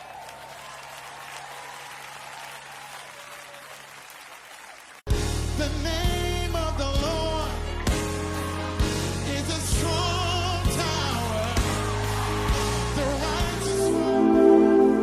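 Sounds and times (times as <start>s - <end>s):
crowd applauding: 0.0s - 5.1s, 11.0s - 14.9s
loud music with singer: 5.3s - 15.0s.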